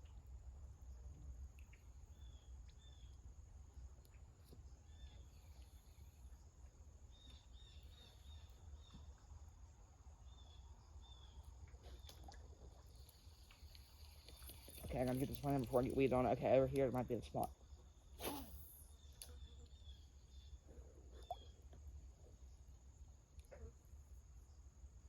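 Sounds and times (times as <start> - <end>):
bird chirping: 7.1 - 9.2.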